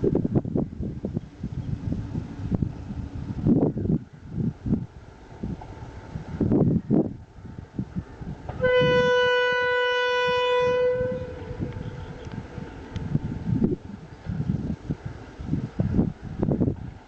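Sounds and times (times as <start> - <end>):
wind rumbling on microphone: 0.0 - 17.0
locomotive air horn blast: 8.5 - 12.2.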